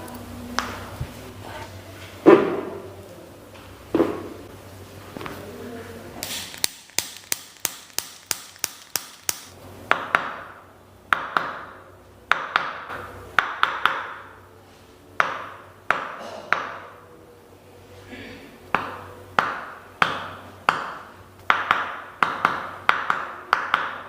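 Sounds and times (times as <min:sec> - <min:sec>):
chiropractic clicks: 0:06.2 - 0:09.6.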